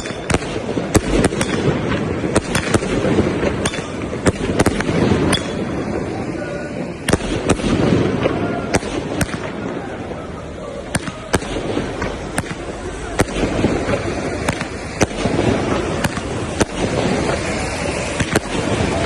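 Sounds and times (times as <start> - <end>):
fireworks cracking: 0.0 - 19.0
din of voices: 5.8 - 7.1, 9.4 - 14.4.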